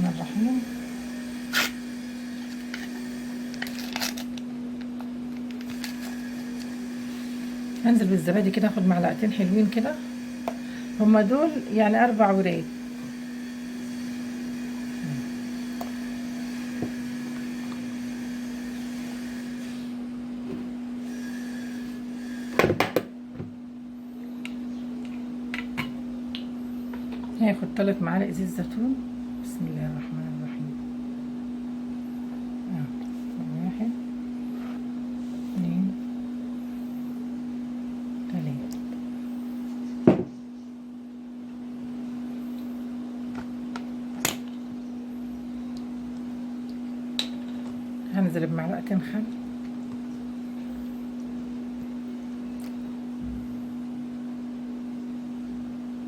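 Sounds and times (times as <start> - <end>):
low appliance hum: 0.0 - 56.0.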